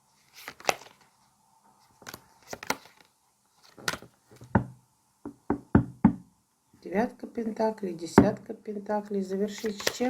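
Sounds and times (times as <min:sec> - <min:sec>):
cards clicking and slapping: 0:00.4 - 0:01.0, 0:02.0 - 0:04.1, 0:09.6 - 0:10.0.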